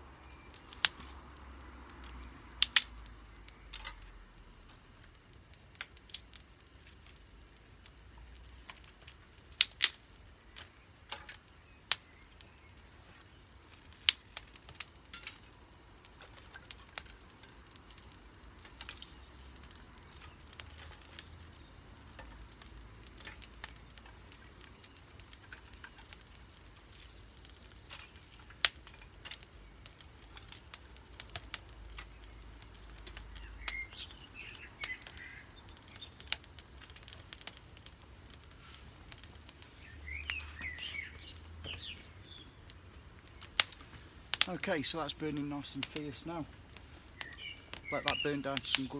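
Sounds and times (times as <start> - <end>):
wood fire crackling and popping: 0.0 - 48.9
bird chirping: 33.3 - 36.6, 39.7 - 42.6, 47.2 - 48.9.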